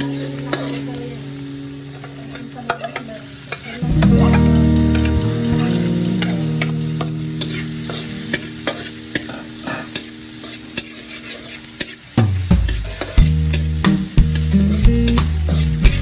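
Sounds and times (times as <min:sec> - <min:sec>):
food sizzling in a pan: 0:00.0 - 0:16.0
background music: 0:03.8 - 0:09.8
utensil scraping against pan: 0:09.6 - 0:12.1.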